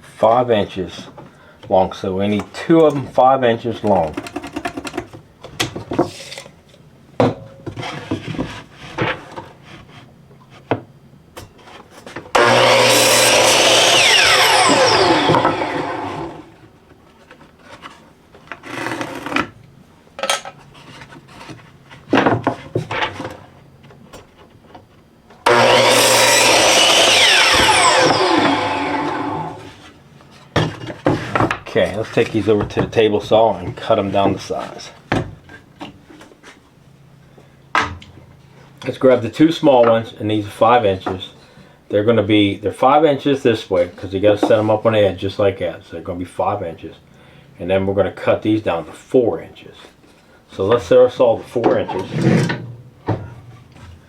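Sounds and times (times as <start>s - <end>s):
power saw cutting wood: 12.3s - 16.6s, 25.4s - 29.8s
saw blade spinning down whine: 12.4s - 16.6s, 25.5s - 29.7s.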